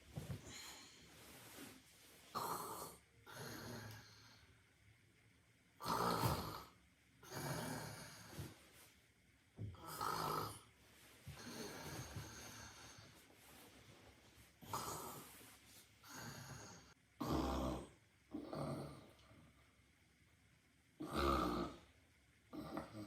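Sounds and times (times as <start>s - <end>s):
person snoring: 2.3s - 4.5s, 5.8s - 8.6s, 9.8s - 10.7s, 11.3s - 13.1s, 14.6s - 19.2s, 21.0s - 21.9s.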